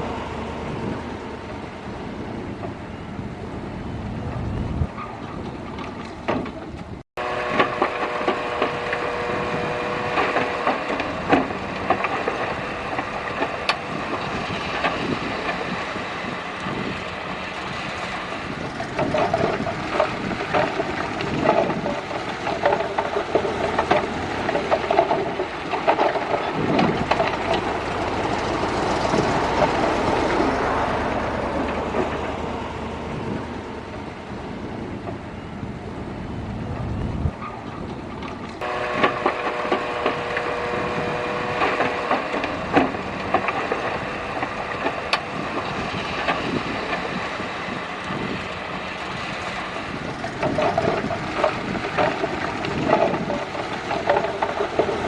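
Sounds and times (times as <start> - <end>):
diesel engine running: 0.0 - 55.0
metallic clanks and knocks: 4.3 - 6.9, 17.6 - 30.6, 48.9 - 55.0.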